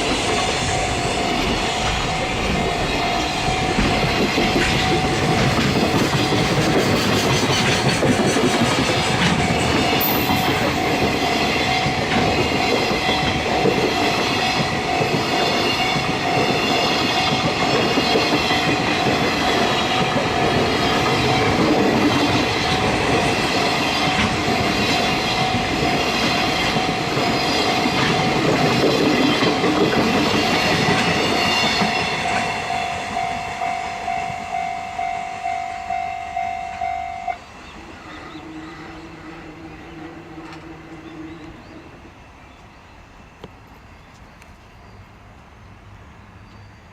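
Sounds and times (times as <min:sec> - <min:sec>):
freight wagons clacking over rails: 0:00.0 - 0:33.3
level crossing bell ringing: 0:10.0 - 0:10.6.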